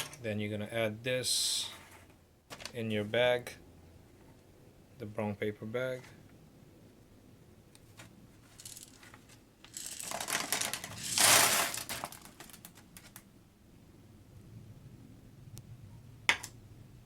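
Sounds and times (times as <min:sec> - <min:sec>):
popcorn kernels poured into paper bag: 0:09.8 - 0:12.4
paper bag crinkling: 0:09.8 - 0:12.7.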